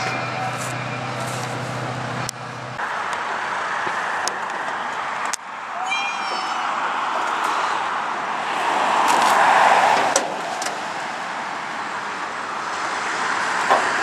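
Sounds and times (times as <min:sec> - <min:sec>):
car passing by: 0:06.9 - 0:11.4.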